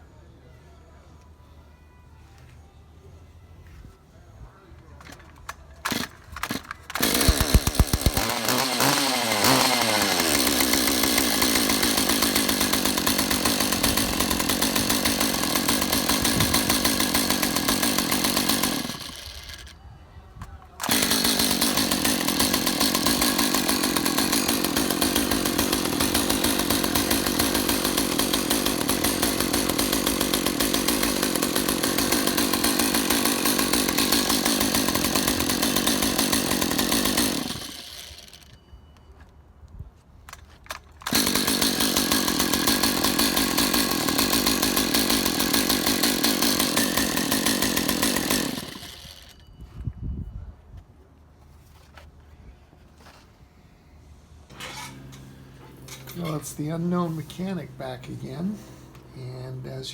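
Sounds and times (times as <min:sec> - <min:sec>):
chainsaw revving: 0:05.9 - 0:19.7, 0:20.8 - 0:38.5, 0:41.0 - 0:49.3, 0:54.5 - 0:59.9.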